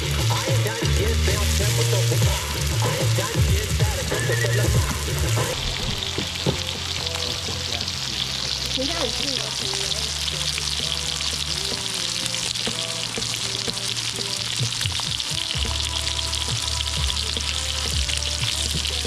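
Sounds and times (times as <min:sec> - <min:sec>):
background music: 0:00.0 - 0:19.0
dense crackling hiss: 0:00.0 - 0:19.0.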